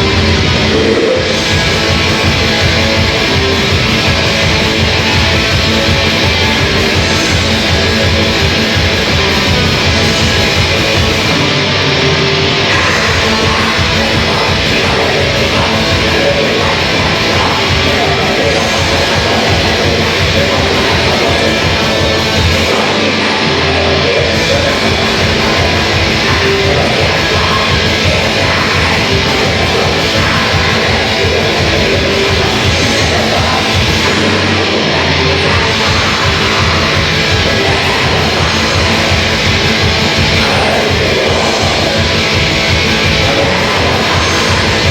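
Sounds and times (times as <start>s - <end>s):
distorted electric guitars: 0.0s - 44.9s
rapid drumming: 0.0s - 44.9s.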